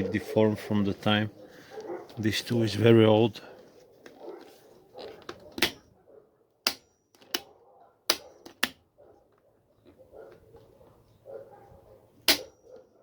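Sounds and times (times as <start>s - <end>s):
plastic switch clicks: 5.4s - 5.8s.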